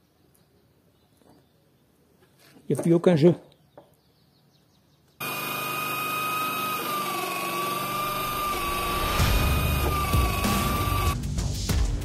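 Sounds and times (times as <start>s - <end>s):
electric drill motor whining: 5.2s - 11.2s.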